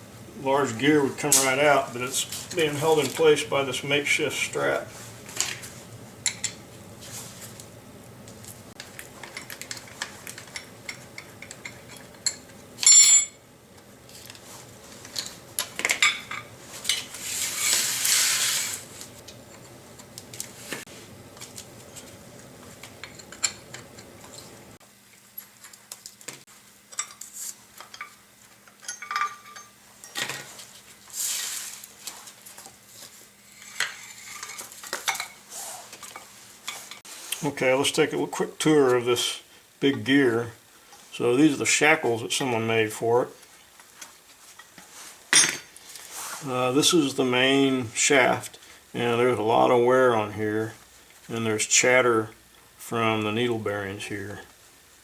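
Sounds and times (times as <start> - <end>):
low steady hum: 0.0 - 31.1
metal tools clanking and scraping: 28.8 - 30.5.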